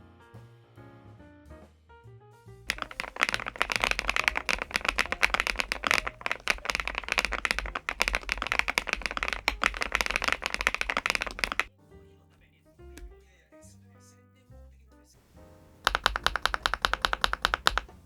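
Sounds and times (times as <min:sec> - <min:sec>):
mechanical keyboard typing: 0:02.7 - 0:11.7, 0:15.8 - 0:18.0.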